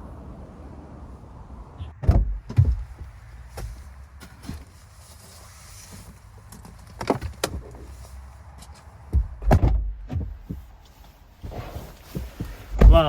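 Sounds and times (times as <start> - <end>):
car doors shutting: 1.8 - 3.8, 9.1 - 10.7, 11.4 - 13.0.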